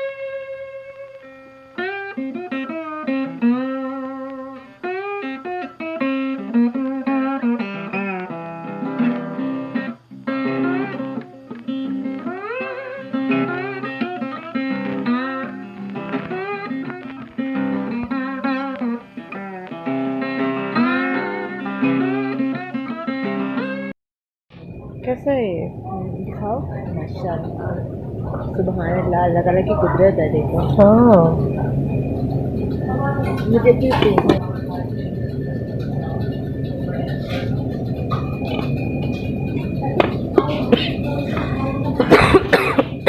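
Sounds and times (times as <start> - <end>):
plucked guitar music: 0.0 - 23.9, 24.6 - 43.0.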